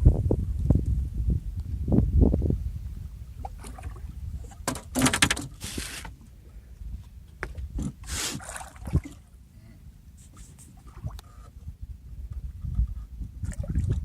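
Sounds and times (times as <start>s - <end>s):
water splash: 3.4s - 4.1s, 8.2s - 9.3s.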